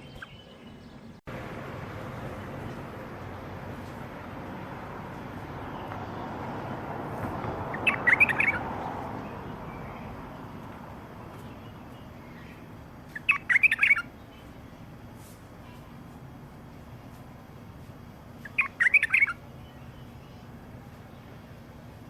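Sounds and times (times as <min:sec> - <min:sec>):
bird singing warbled phrases: 0:00.0 - 0:01.2, 0:07.7 - 0:15.0, 0:18.4 - 0:22.0
steady background noise: 0:00.0 - 0:22.0.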